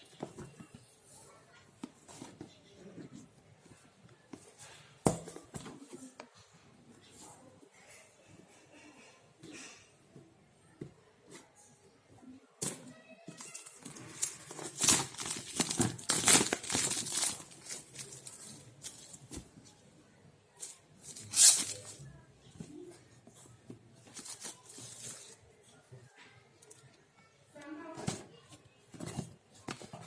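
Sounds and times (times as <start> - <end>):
packaging tearing and crinkling: 13.6 - 18.6.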